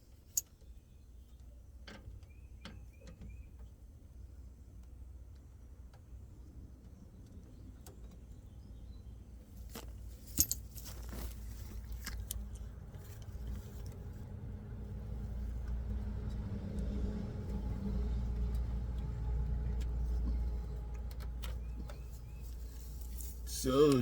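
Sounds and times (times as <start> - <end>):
metal tools clinking: 9.6 - 14.0.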